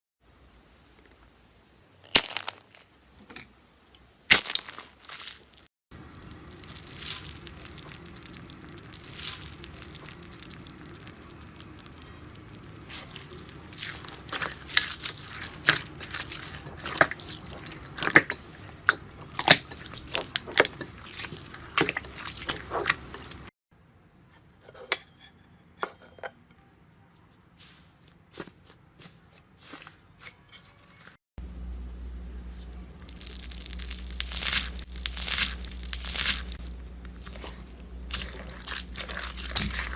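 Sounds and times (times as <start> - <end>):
slime crackling and popping: 4.3 - 23.5, 33.0 - 39.9.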